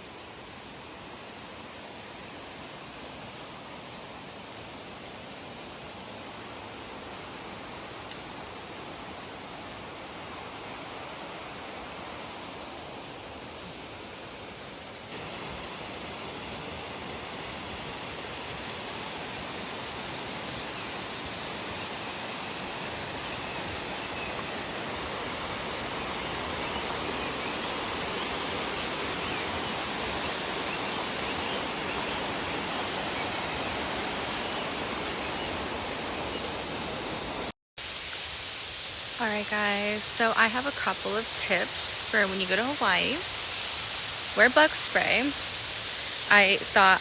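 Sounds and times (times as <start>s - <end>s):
waterfall rushing: 15.1s - 47.0s.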